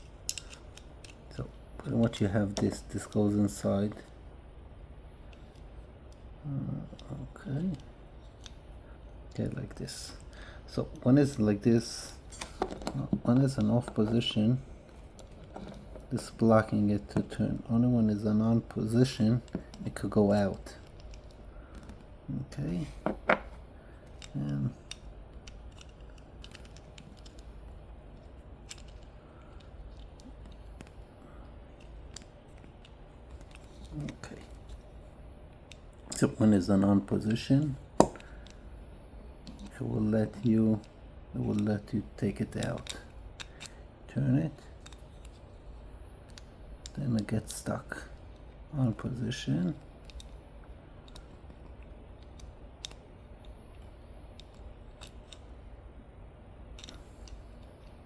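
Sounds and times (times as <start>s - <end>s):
steady low hum: 0.0s - 58.0s
small metal parts clicking: 0.2s - 1.2s, 23.0s - 31.0s, 49.7s - 50.4s, 51.0s - 55.6s, 56.7s - 58.0s
light metal clicks: 0.2s - 3.3s, 51.0s - 55.6s.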